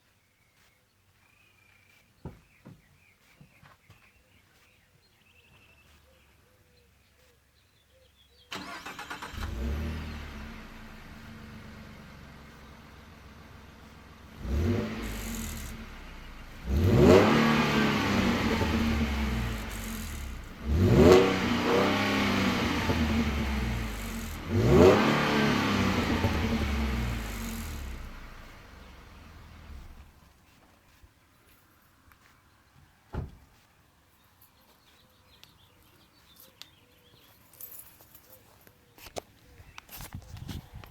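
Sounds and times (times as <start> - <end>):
engine rattle: 8.5 - 30.1
engine revving: 8.5 - 30.1
truck engine starting and idling: 8.5 - 30.2.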